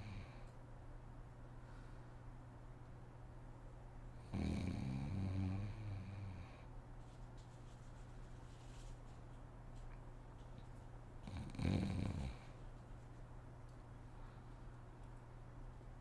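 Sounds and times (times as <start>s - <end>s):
woman snoring: 4.3s - 6.5s, 11.3s - 12.4s.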